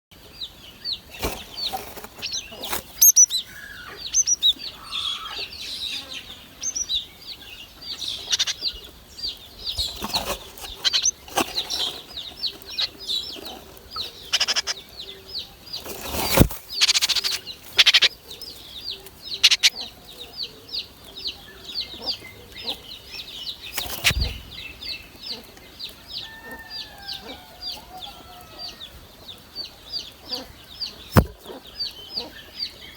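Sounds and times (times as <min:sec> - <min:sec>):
nestlings chirping: 0:00.2 - 0:32.9
thumps and rustles: 0:09.8 - 0:12.3, 0:15.8 - 0:16.8, 0:23.8 - 0:24.6, 0:31.1 - 0:31.5.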